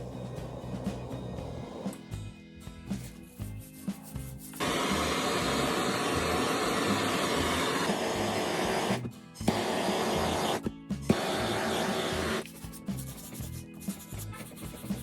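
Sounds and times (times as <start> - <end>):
background music: 0.0 - 15.0
blowtorch flame hissing: 1.4 - 1.9, 4.6 - 12.4.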